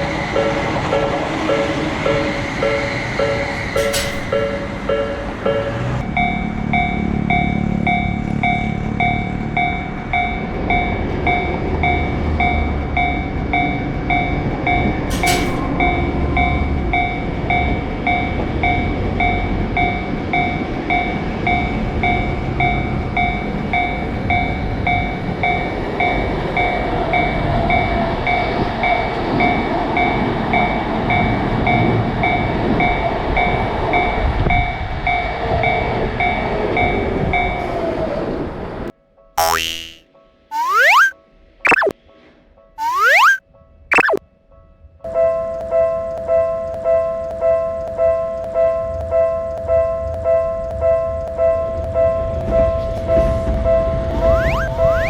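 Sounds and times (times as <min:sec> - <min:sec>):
passing train rumble: 0:00.0 - 0:33.4.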